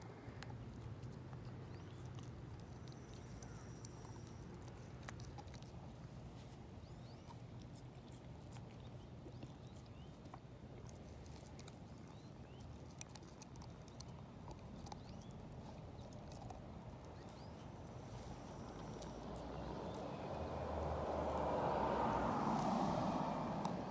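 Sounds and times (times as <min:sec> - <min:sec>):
teeth cracking on bone: 0:07.6 - 0:20.1.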